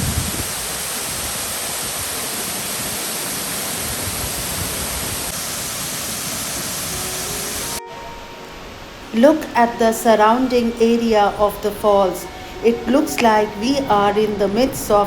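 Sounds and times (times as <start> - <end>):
waterfall rushing onto rock: 0.0 - 7.8.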